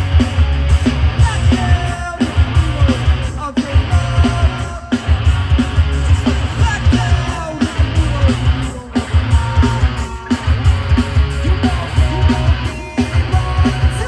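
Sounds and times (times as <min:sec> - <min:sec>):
distorted electric guitar: 0:00.0 - 0:14.0
pounding drums and bass: 0:00.0 - 0:14.0
vocals: 0:00.0 - 0:14.0.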